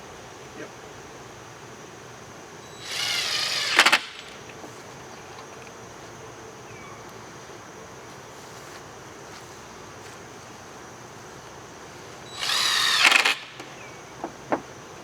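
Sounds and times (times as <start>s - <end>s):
power drill driving a screw: 2.7s - 4.4s, 12.3s - 13.7s.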